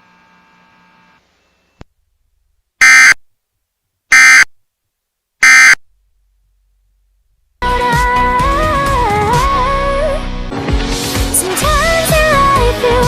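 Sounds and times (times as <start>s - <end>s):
buzzy data tone bursts: 2.8s - 3.2s, 4.1s - 4.5s, 5.4s - 5.8s.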